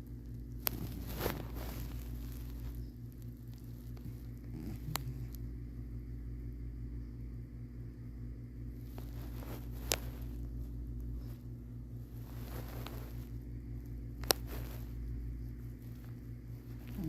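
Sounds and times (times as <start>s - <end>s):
cat purring: 0.0s - 6.3s, 8.7s - 17.0s.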